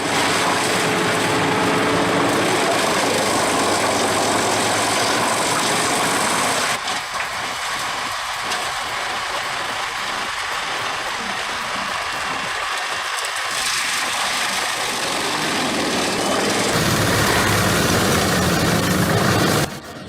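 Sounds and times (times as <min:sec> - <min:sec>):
wood chipper engine drone: 0:00.0 - 0:20.0
rough mechanical rattle: 0:07.8 - 0:20.0.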